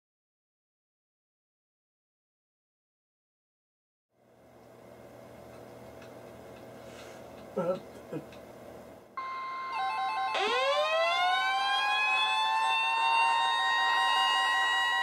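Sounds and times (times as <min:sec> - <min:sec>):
beeping alarm: 0:09.2 - 0:15.0
siren-style alarm: 0:09.2 - 0:15.0.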